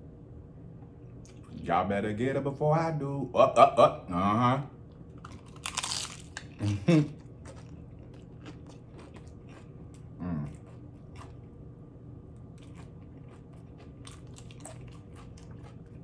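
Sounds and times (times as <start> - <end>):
crunching tortilla chips: 5.1 - 11.5, 12.6 - 16.0
person humming: 10.2 - 10.6.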